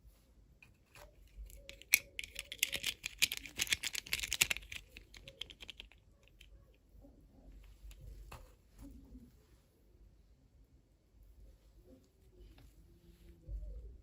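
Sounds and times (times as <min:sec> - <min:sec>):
plastic packaging crinkling: 0:00.8 - 0:06.0.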